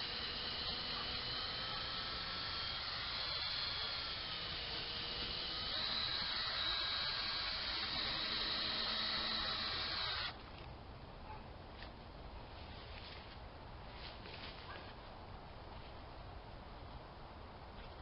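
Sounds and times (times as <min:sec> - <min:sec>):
power tool motor whining: 0:00.0 - 0:10.4.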